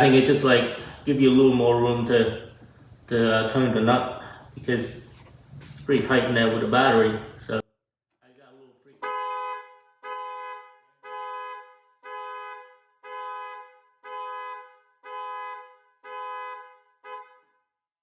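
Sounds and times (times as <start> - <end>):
two-tone car horn honking: 9.0 - 17.7.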